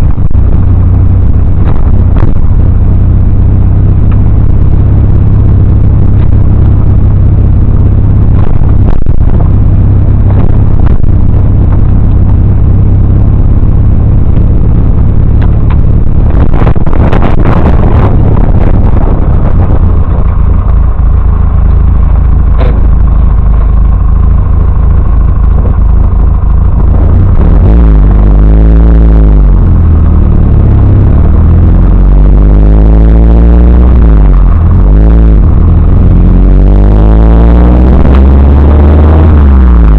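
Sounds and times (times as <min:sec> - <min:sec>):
distorted car engine revving: 0:00.0 - 0:39.9
sharp knocks: 0:22.6 - 0:22.9.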